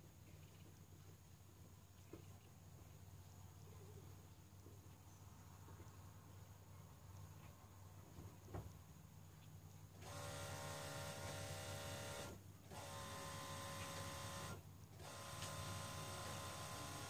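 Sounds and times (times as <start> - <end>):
high-pitched electric motor whine: 10.0 - 17.0.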